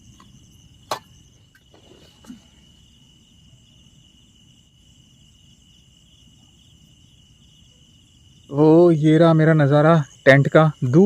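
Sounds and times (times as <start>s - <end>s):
crickets trilling: 0.0s - 11.0s.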